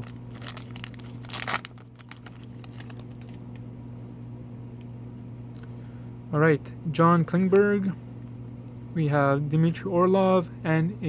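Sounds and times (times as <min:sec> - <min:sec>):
wrapper crinkling and tearing: 0:00.0 - 0:03.6
steady low hum: 0:00.0 - 0:11.0.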